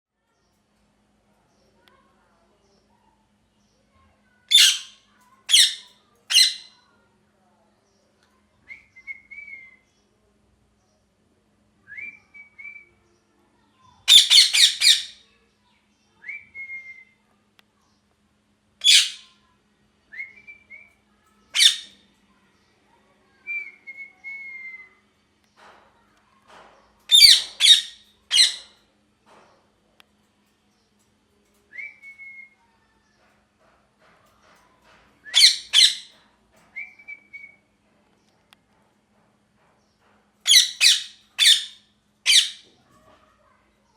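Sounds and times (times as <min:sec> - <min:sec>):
parrot screeching: 0:04.5 - 0:06.7, 0:14.1 - 0:15.2, 0:18.8 - 0:19.3, 0:21.6 - 0:22.0, 0:27.1 - 0:28.8, 0:35.3 - 0:36.1, 0:40.5 - 0:42.6.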